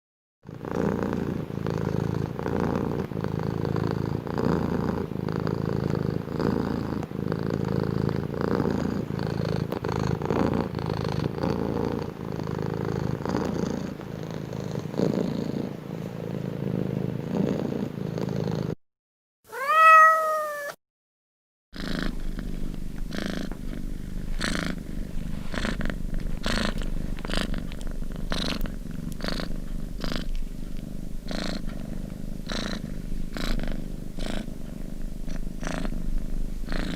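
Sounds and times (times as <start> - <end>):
cat purring: 0.4 - 18.8, 21.8 - 36.9
cat meowing: 19.5 - 20.8.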